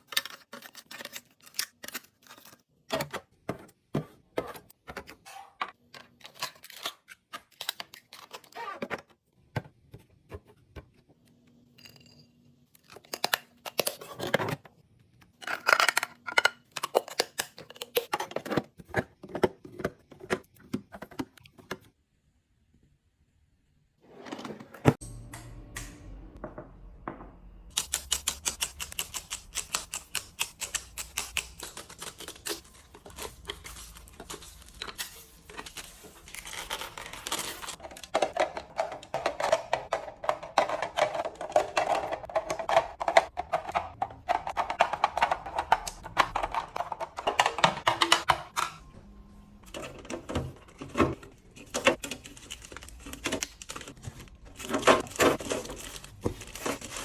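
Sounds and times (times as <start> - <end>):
small hard items clattering: 32.3 - 48.6, 49.6 - 57.0.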